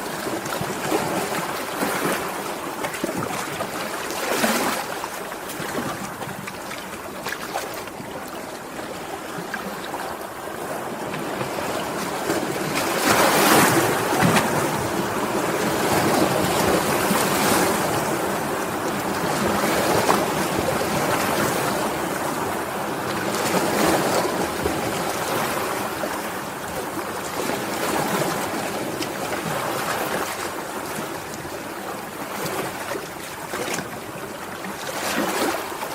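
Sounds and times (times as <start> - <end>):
sea waves breaking: 0.0 - 35.9.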